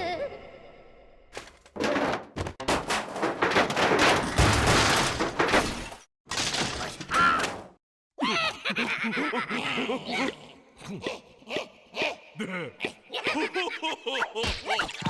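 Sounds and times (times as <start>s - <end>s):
cartoon crashes and thuds: 1.8s - 7.8s.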